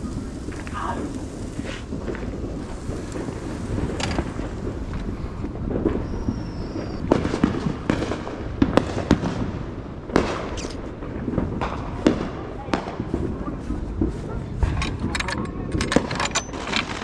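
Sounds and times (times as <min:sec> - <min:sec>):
low rumble: 0:00.0 - 0:07.8
firework whistle: 0:00.0 - 0:09.6
fireworks bangs and pops: 0:00.0 - 0:17.0.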